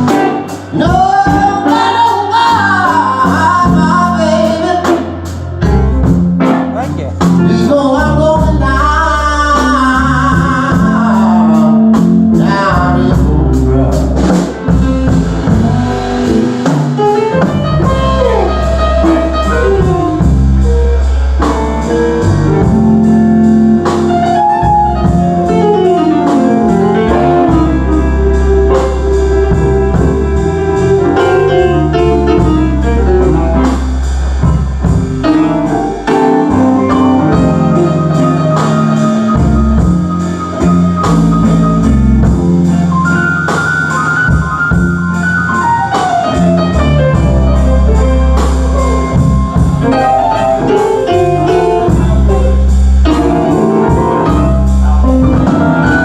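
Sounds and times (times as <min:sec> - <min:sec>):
blues-rock band jamming: 0:00.0 - 0:56.0
bending lead guitar notes: 0:14.6 - 0:56.0.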